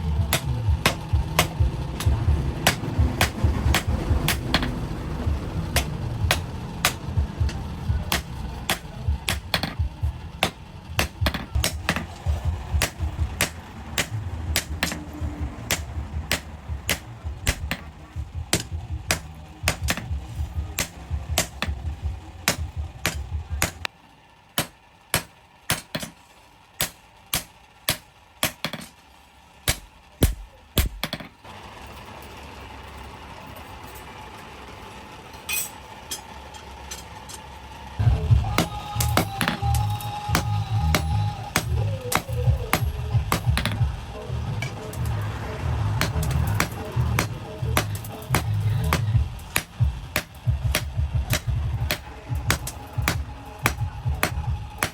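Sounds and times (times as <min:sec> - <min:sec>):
hammer striking steel on anvil: 0:00.0 - 0:23.9, 0:24.6 - 0:29.0, 0:29.7 - 0:31.3, 0:38.4 - 0:44.0, 0:46.0 - 0:54.9
low rumble: 0:00.0 - 0:23.9, 0:38.0 - 0:54.9.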